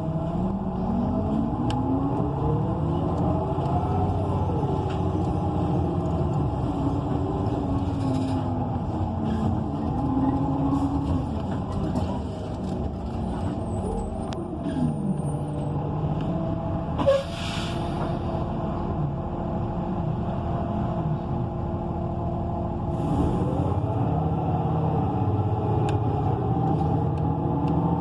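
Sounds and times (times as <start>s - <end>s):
bus engine: 0.0s - 28.0s
air brake hiss: 17.0s - 18.1s.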